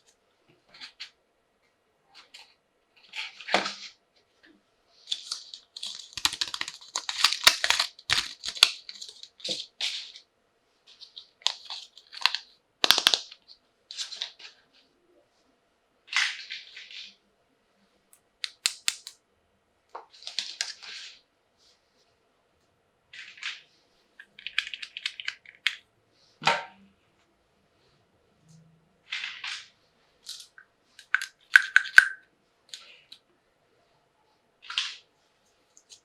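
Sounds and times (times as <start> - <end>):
plastic packaging crinkling: 5.3 - 9.3, 18.5 - 19.1
hard plastic parts clicking: 6.2 - 8.7, 18.4 - 19.2.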